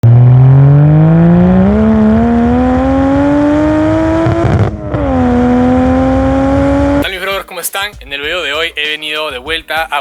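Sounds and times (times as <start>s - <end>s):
turbocharged engine accelerating: 0.0s - 7.0s.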